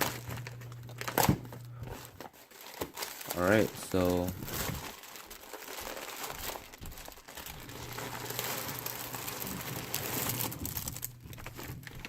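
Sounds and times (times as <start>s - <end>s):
packaging crinkling and rustling: 0.0s - 12.0s.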